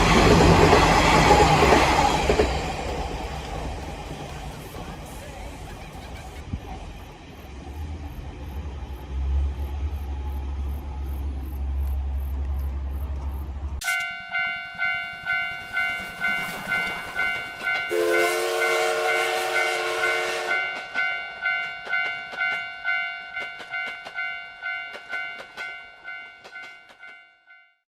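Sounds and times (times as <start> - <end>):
train wheels clicking over rail joints: 0.0 - 10.4, 11.0 - 19.2, 20.1 - 27.5
railroad crossing bell ringing: 13.8 - 27.8
train horn: 17.8 - 20.9.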